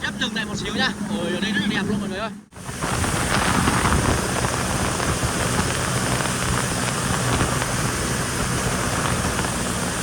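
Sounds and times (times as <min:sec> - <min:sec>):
jet ski engine running: 0:00.0 - 0:10.0
rush of wind and water: 0:01.8 - 0:10.0.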